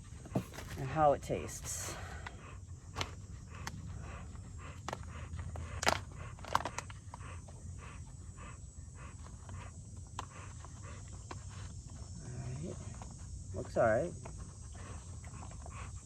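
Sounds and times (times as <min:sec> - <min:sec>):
dog panting: 0:00.0 - 0:16.0
food pouch clicks and rustles: 0:05.8 - 0:07.0.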